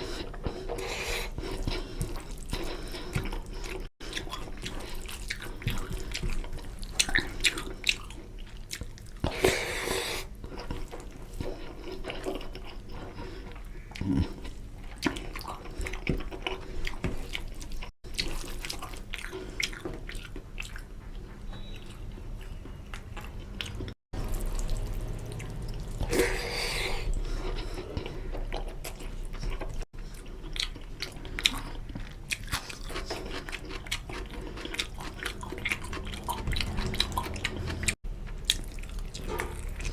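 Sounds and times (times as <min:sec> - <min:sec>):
slurps and sharp breaths: 0:00.0 - 0:06.3, 0:09.2 - 0:10.6, 0:26.0 - 0:28.4
wet chewing and lip smacks: 0:01.4 - 0:09.4, 0:27.5 - 0:39.9.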